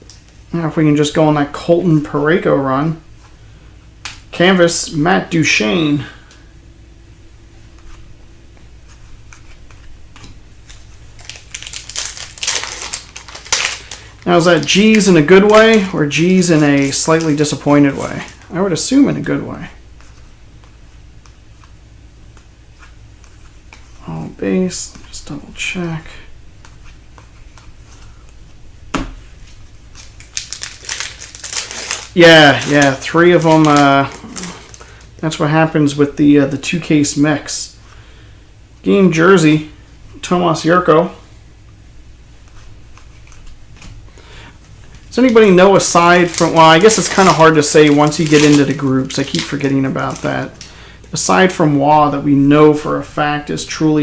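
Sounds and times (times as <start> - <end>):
wrappers rustling and crinkling: 10.7 - 19.3, 29.4 - 35.2, 44.7 - 51.3.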